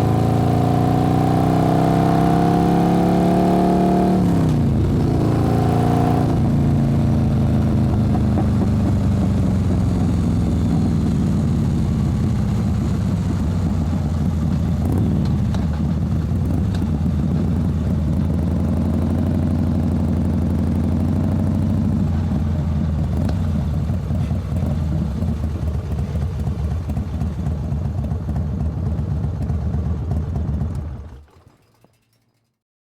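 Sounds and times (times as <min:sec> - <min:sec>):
motorcycle engine idling: 0:06.4 - 0:32.0.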